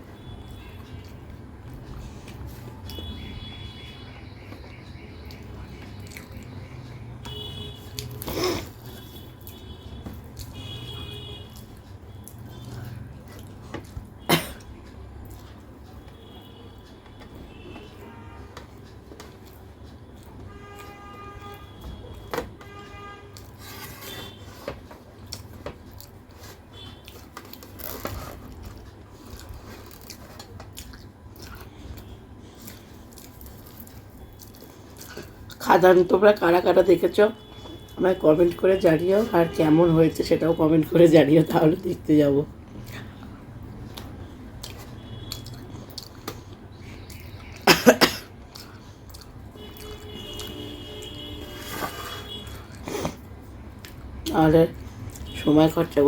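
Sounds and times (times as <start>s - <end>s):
chewing and biting food: 5.2s - 7.0s, 25.1s - 35.6s, 42.7s - 47.6s, 48.5s - 50.5s
woman coughing: 8.3s - 8.8s, 14.2s - 14.7s, 47.6s - 48.3s.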